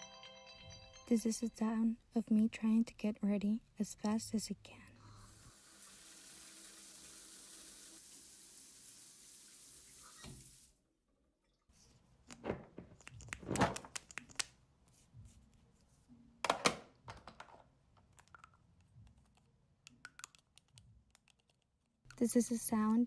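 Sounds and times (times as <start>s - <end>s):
running water hissing: 5.2s - 10.8s.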